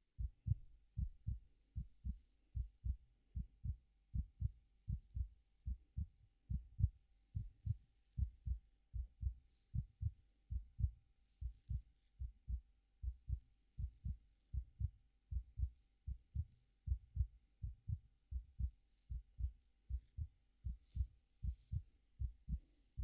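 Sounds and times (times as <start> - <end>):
heartbeat thumps: 0.2 - 23.0
fingers rustling through hair: 7.2 - 8.6.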